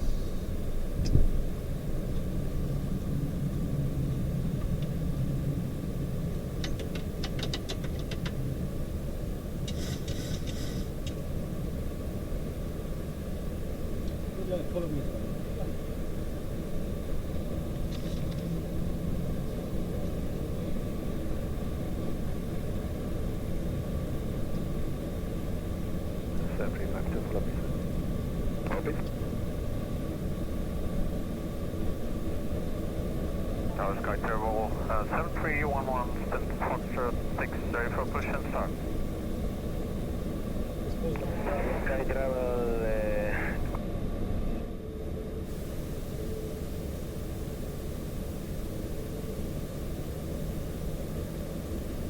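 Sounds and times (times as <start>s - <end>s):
cockpit engine rumble: 0.0s - 44.8s
faint steady tones: 11.0s - 52.0s.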